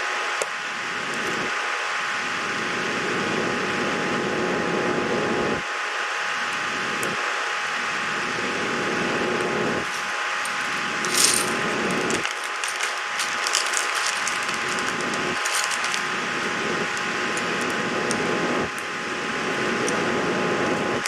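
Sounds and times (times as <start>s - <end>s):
steady hiss: 6.6s - 21.0s
plastic keycaps clicking: 9.8s - 16.1s.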